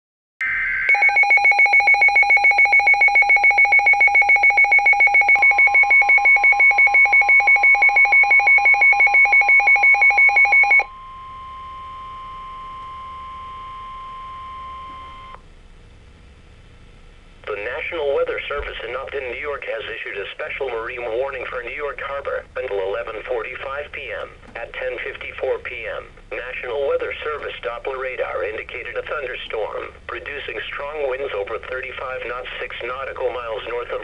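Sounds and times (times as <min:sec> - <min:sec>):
pulsing two-pitch alarm: 0:00.4 - 0:15.4
single-pitch warning tone: 0:00.4 - 0:15.4.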